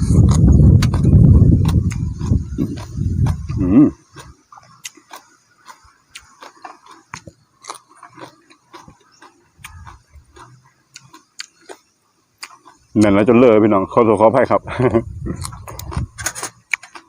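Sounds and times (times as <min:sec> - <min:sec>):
mouth clicks: 0:00.0 - 0:13.4, 0:15.2 - 0:17.0
chewing crunchy food: 0:00.0 - 0:13.6, 0:15.1 - 0:17.0
short vocal sound: 0:03.3 - 0:04.1.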